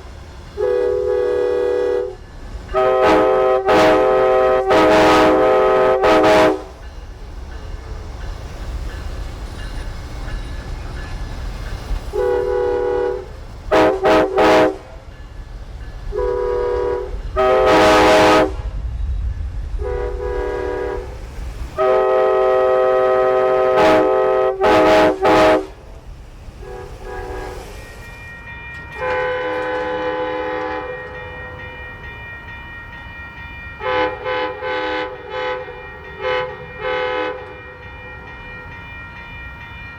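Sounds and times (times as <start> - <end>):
train air horn blasts: 0.6 - 6.8, 12.1 - 15.0, 16.1 - 18.8, 19.8 - 21.2, 21.8 - 25.9, 26.6 - 27.8, 29.0 - 31.4, 33.8 - 37.7
low rumble: 18.4 - 21.8.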